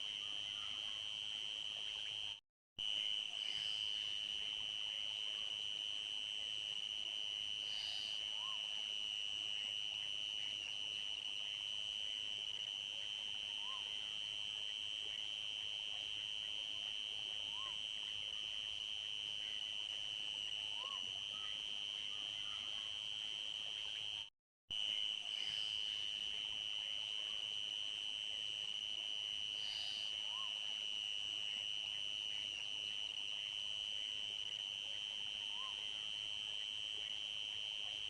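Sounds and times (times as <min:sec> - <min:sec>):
night insects droning: 0:00.0 - 0:38.0
faint animal calls: 0:20.8 - 0:22.8.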